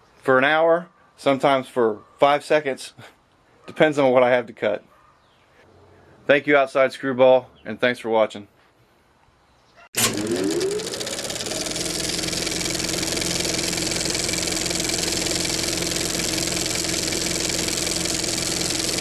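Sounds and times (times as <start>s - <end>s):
bandsaw motor spinning up: 10.0s - 19.0s.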